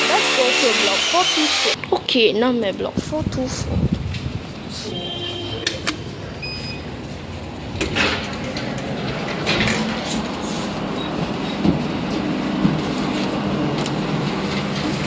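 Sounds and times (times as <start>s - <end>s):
lift machinery rumbling: 2.6s - 15.0s.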